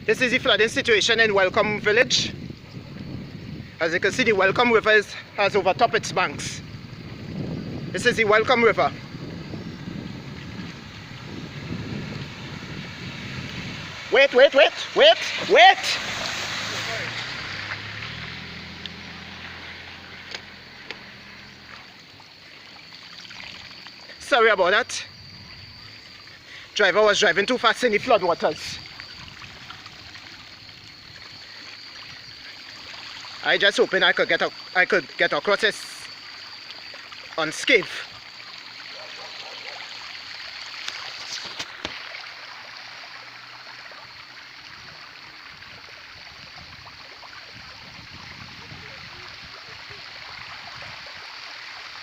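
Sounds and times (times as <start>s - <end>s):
floodwater sloshing and rushing: 1.4s - 52.0s
vehicle engine hum: 9.0s - 22.9s.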